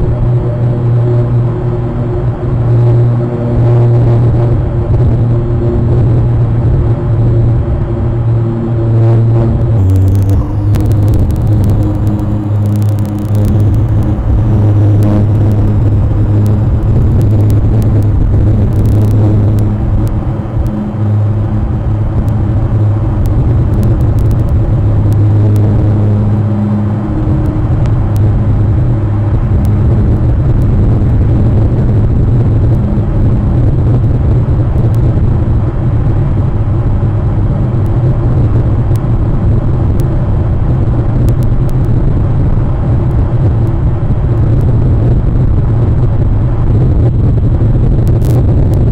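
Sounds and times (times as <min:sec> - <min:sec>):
loud low hum with rumble: 0:00.0 - 0:48.9
faint scattered clicks: 0:09.8 - 0:31.2.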